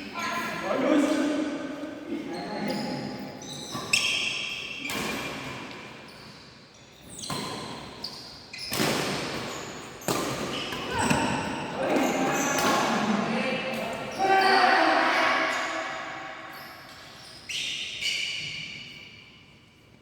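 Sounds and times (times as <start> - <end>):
racket hitting shuttlecock: 8.7 - 13.0
players' voices: 10.9 - 16.2.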